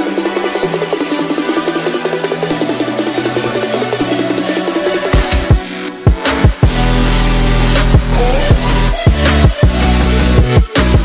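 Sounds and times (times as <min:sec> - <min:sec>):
electronic dance music: 0:00.0 - 0:11.0
deep steady bass: 0:05.2 - 0:11.0.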